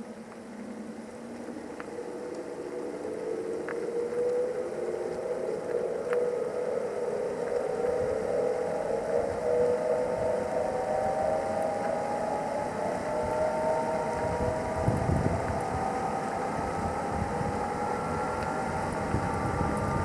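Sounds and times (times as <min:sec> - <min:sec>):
faint ticks: 0:00.0 - 0:17.4, 0:18.3 - 0:20.0
electric car drive unit whining: 0:00.0 - 0:20.0.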